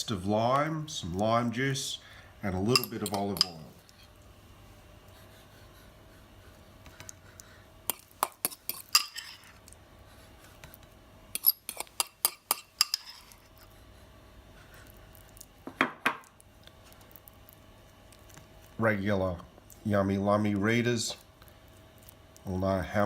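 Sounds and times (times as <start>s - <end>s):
cutlery clinking against a dish: 7.9s - 9.4s, 11.4s - 13.3s.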